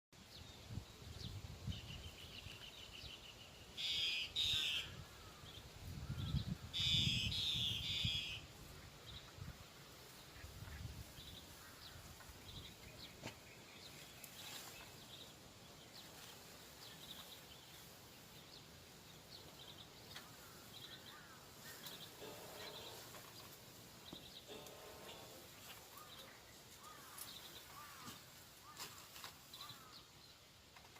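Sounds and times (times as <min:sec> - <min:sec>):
birds harsh calls: 0:03.8 - 0:08.5, 0:19.7 - 0:30.1
wind buffeting microphone: 0:04.9 - 0:09.7.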